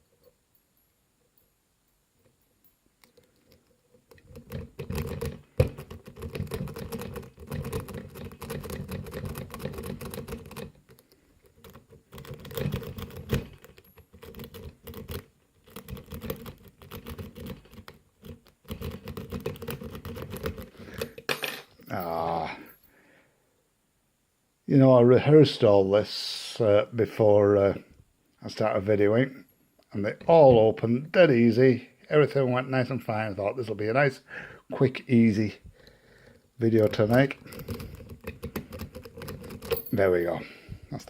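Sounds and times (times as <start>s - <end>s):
lock pick rattling pins: 2.2s - 22.1s, 36.8s - 40.4s.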